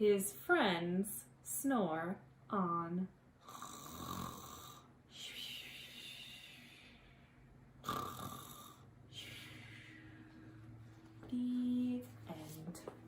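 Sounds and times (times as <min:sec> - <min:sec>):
woman pretend snoring: 0:03.4 - 0:04.9, 0:07.8 - 0:09.3.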